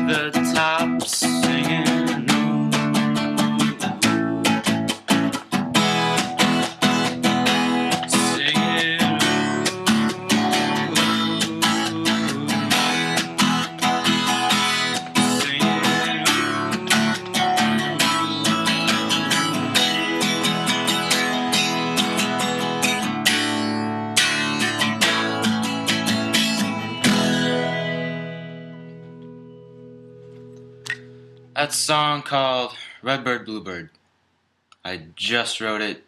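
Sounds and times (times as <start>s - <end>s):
acoustic guitar strummed: 0.0s - 32.1s.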